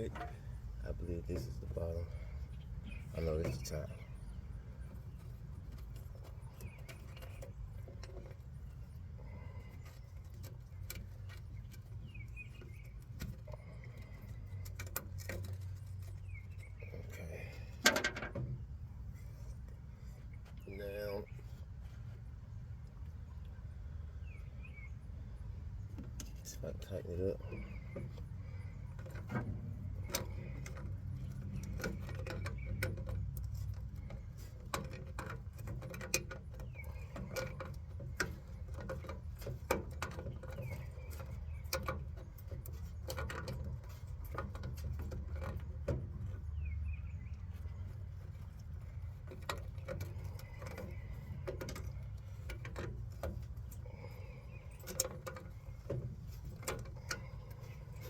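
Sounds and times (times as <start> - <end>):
metallic clicks and knocks: 0.0 - 0.4, 17.7 - 18.6, 27.5 - 46.5, 47.4 - 58.0
low steady rumble: 0.0 - 58.0.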